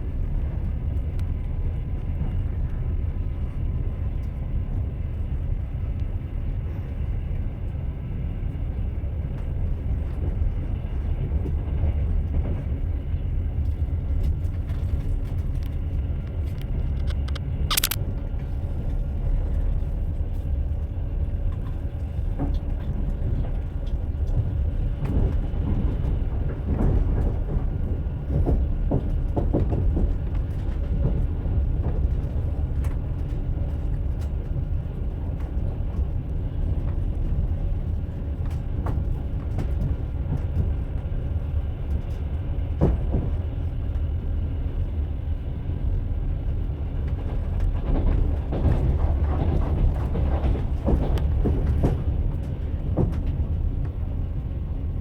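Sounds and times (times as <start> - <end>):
train rumbling on rails: 0.0 - 55.0
sharp high click: 17.0 - 18.0
wheel clacks over rail joints: 47.0 - 54.0.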